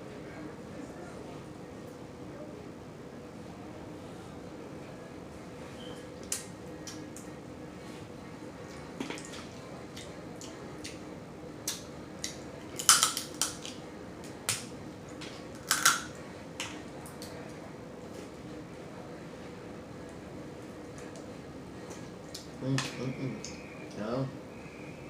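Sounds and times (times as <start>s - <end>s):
crab shells cracking: 11.7s - 13.8s, 15.5s - 16.1s.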